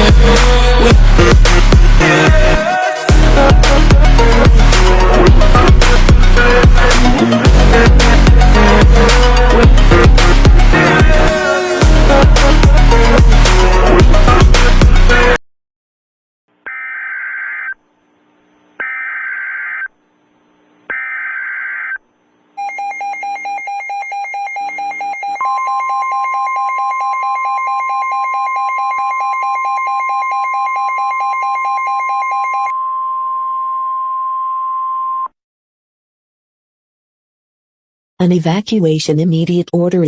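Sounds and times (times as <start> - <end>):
electronic alert tone: 22.6 - 35.2.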